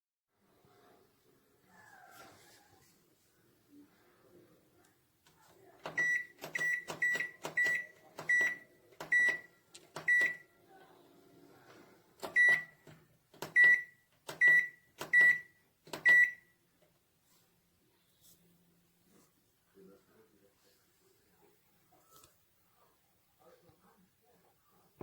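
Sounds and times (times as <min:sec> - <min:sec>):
microwave keypad beeps: 0:05.8 - 0:10.4, 0:12.2 - 0:12.8, 0:13.4 - 0:16.6.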